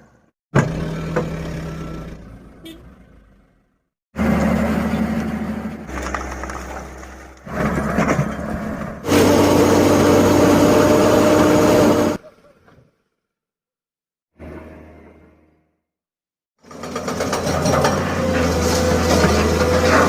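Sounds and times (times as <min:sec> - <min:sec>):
heavy machinery engine running: 0:04.2 - 0:12.2, 0:16.7 - 0:20.0.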